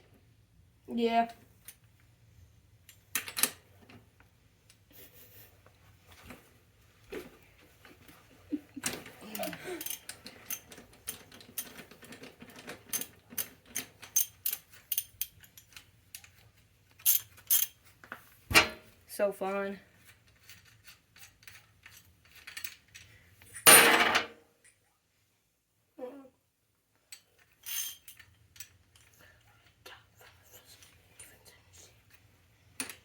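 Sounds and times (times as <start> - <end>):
tools and metal parts clinking: 8.8 - 17.8, 20.0 - 24.3, 27.1 - 29.2.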